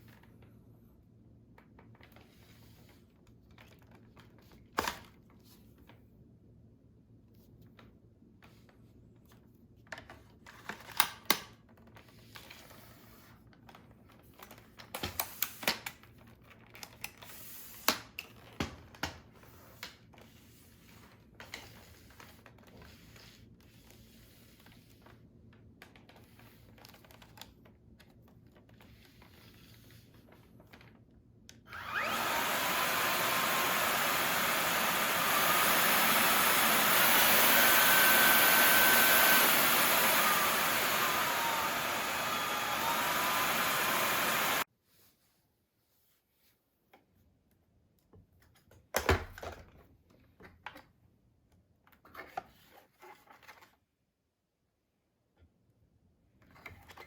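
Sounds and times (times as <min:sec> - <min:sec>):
stick vacuum running: 0:31.7 - 0:44.6.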